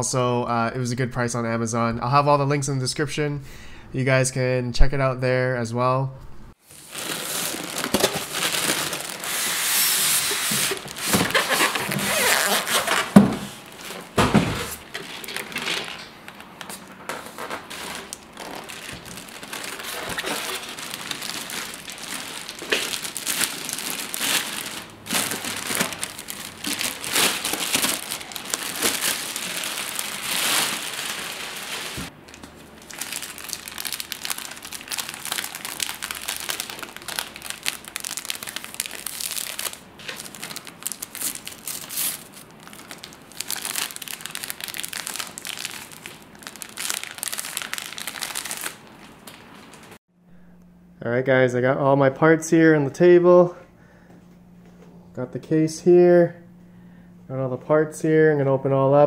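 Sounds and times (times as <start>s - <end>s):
packaging crinkling: 6.6s - 14.2s, 14.8s - 50.0s.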